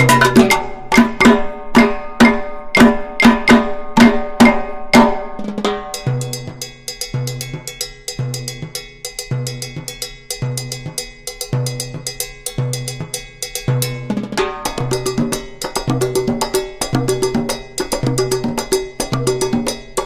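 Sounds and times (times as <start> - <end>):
music with drum beat: 0.0 - 20.0.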